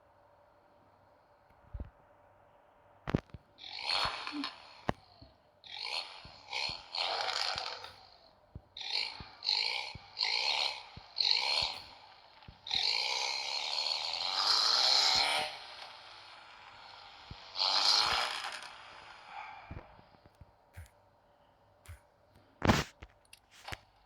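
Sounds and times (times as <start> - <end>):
harsh raspy animal calls: 3.6 - 18.6.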